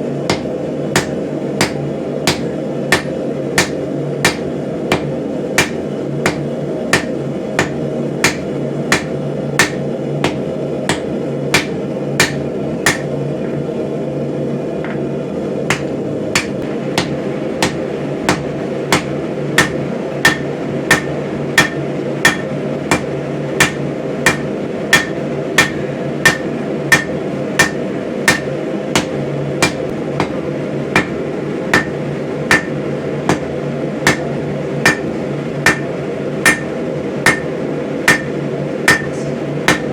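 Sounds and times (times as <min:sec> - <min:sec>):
hammer striking steel on anvil: 0:00.3 - 0:13.2, 0:15.7 - 0:39.9.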